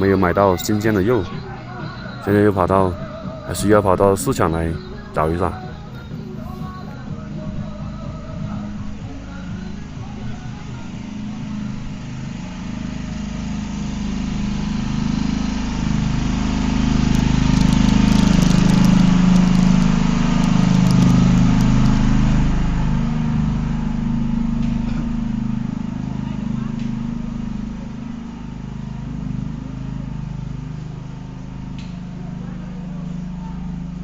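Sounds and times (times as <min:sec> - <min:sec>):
motorcycle engine running: 0:00.0 - 0:34.0.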